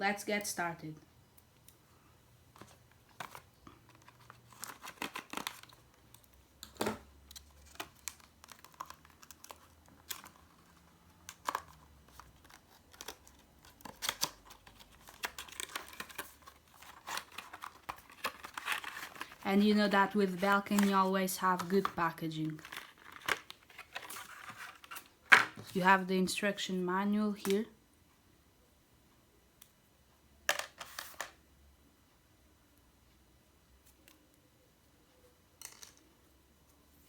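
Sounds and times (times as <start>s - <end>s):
packaging crinkling and tearing: 3.1s - 6.3s, 7.3s - 25.1s.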